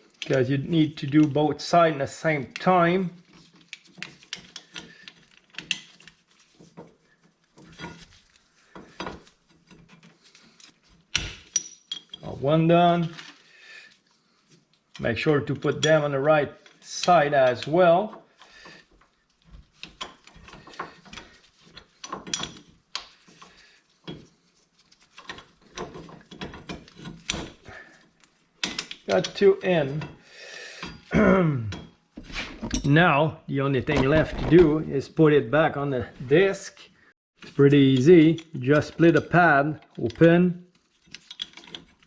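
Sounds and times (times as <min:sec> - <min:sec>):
metal clicks and scrapes: 0:02.5 - 0:12.3, 0:15.7 - 0:31.1, 0:37.4 - 0:42.0.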